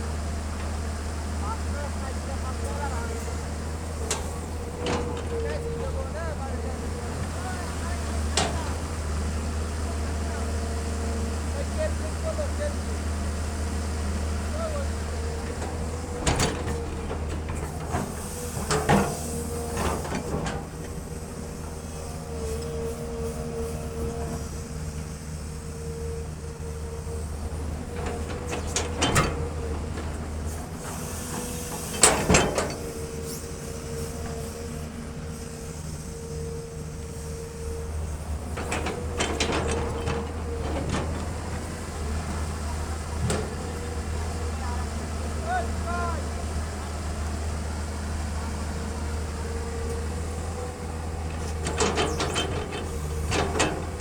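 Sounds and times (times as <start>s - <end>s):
excavator diesel engine running: 0.0s - 54.0s
hydraulic whine: 0.0s - 54.0s
clanks and knocks of metal: 28.0s - 30.5s, 31.3s - 33.1s, 38.4s - 41.7s, 51.3s - 54.0s.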